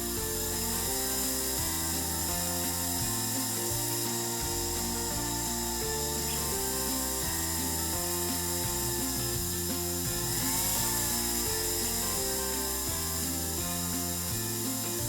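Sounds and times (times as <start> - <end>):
background music: 0.0 - 15.0
grinding wheel whirring against metal: 0.0 - 15.0.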